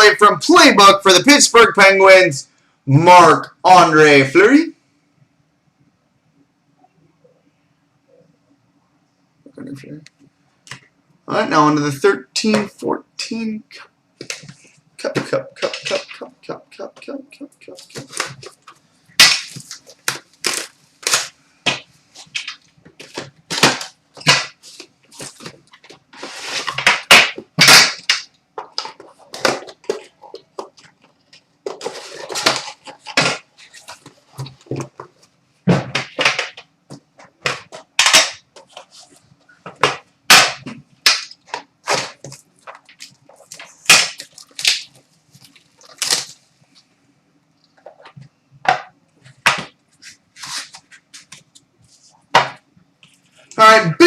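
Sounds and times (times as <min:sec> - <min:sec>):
packaging crackling and tearing: 0:19.5 - 0:21.3, 0:41.9 - 0:46.4.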